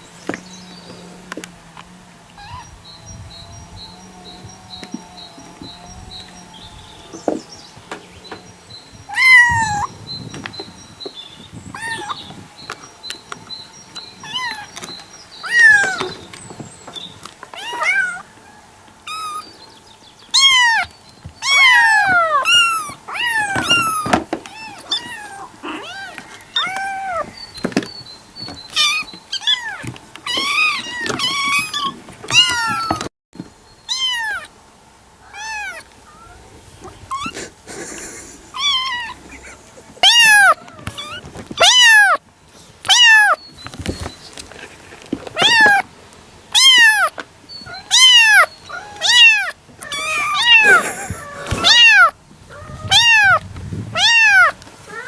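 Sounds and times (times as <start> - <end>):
kitten meowing: 2.4 - 2.7, 9.1 - 9.9, 11.7 - 12.3, 14.2 - 14.7, 15.4 - 16.1, 17.6 - 18.3, 20.4 - 27.4, 28.8 - 33.1, 33.9 - 34.5, 35.2 - 36.4, 37.1 - 37.4, 38.5 - 42.2, 42.9 - 43.4, 45.4 - 45.8, 46.6 - 55.0.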